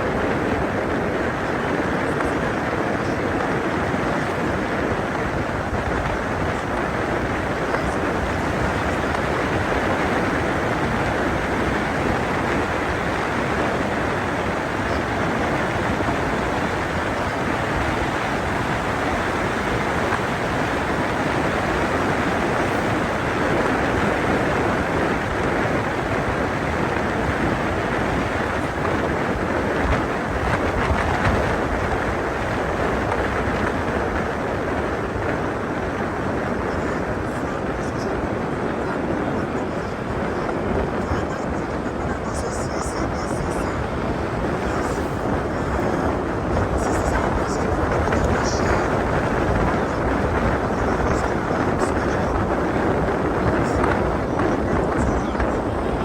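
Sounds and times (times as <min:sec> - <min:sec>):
moving vehicle wind and road noise: 0:00.0 - 0:56.0.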